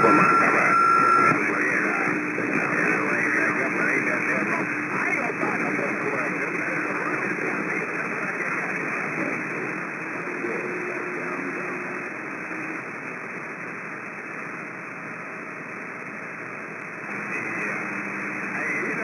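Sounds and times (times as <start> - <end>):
faint steady tone: 0.0 - 8.9
radio static hiss: 0.0 - 19.0.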